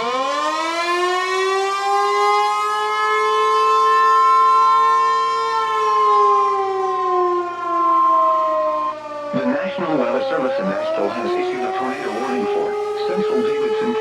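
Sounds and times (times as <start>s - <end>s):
tornado siren wailing: 0.0s - 14.0s
high alert tone: 9.4s - 14.0s.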